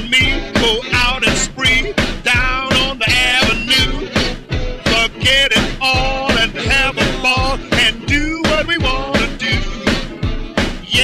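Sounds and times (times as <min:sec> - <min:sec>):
melodic lead line: 0:00.0 - 0:11.0
steady drum beat: 0:00.0 - 0:11.0
upbeat dance music: 0:00.0 - 0:11.0.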